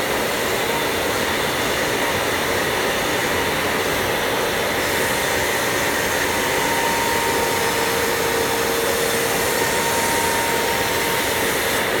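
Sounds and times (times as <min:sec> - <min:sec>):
thin whine: 0:04.8 - 0:12.0.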